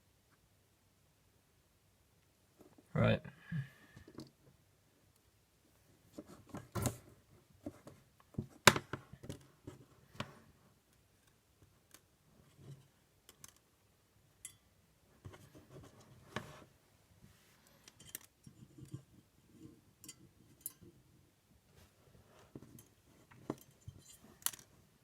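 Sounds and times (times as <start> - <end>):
small objects clicking and tapping: 10.9 - 13.7, 17.8 - 21.0, 22.6 - 24.8.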